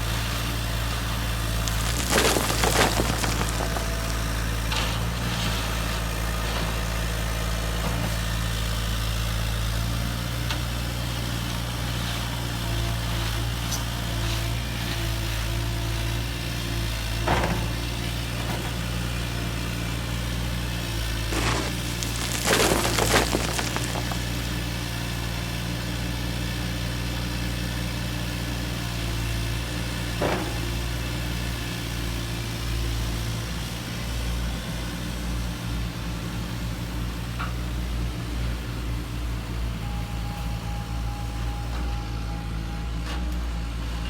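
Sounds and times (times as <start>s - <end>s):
scrapes and clatters: 1.6s - 5.6s, 21.2s - 24.4s.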